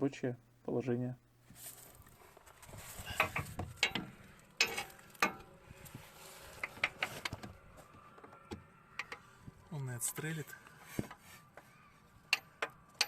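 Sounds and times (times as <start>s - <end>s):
metal tools clicking and scraping: 3.1s - 5.5s.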